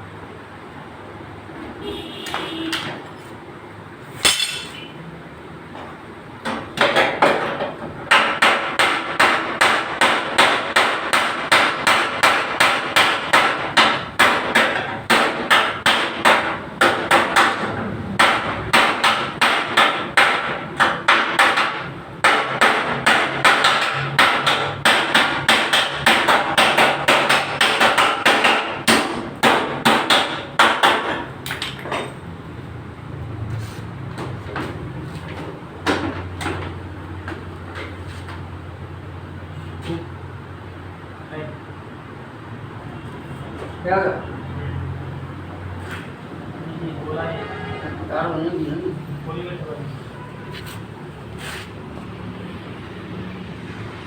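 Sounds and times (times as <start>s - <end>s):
hammer on sheet metal: 4.2s - 5.0s, 6.5s - 32.1s.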